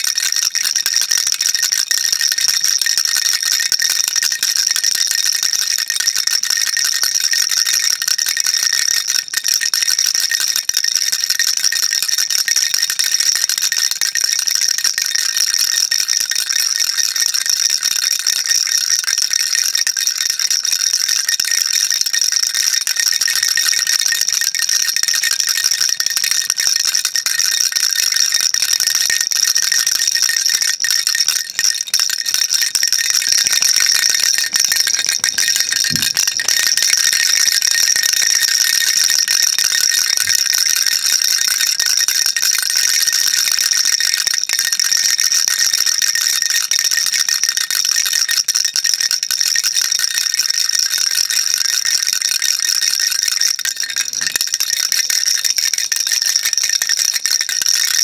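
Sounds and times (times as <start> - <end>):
baby rattle shaken: 20.4 - 47.6, 53.0 - 55.5.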